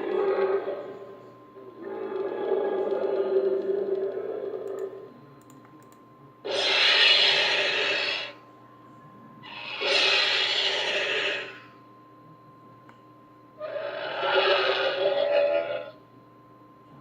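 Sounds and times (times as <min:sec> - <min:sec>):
cassowary raspy hissing calls: 0:06.5 - 0:08.4, 0:09.4 - 0:11.6, 0:13.6 - 0:15.9.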